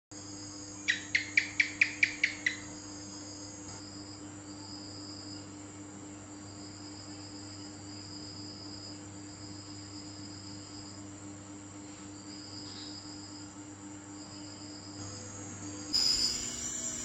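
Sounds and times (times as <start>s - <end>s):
crickets chirping: 0.1s - 17.0s
lizard chirping: 0.9s - 2.6s.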